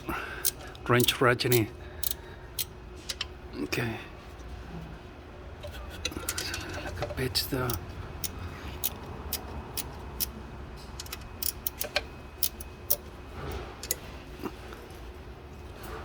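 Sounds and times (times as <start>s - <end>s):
ratcheting wrench clicking: 0.4s - 3.3s, 7.6s - 10.3s, 11.0s - 13.0s.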